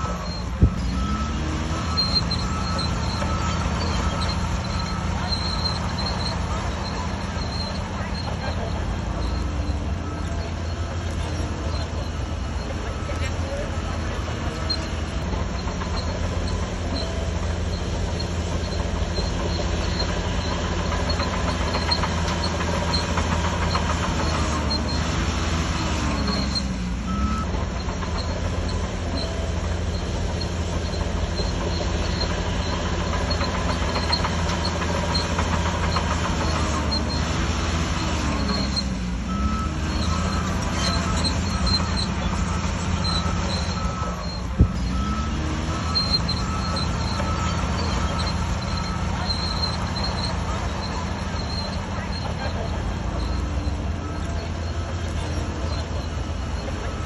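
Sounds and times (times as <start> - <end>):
short high beeps: 0.0 - 15.2
bulldozer diesel drone: 0.0 - 57.0
tracks rattling and squeaking: 0.0 - 57.0.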